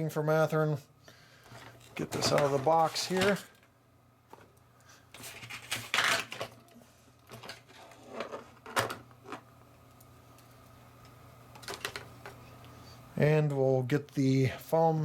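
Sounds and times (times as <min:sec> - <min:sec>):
plastic and foam packing rustling: 0:01.5 - 0:03.6, 0:05.2 - 0:06.7.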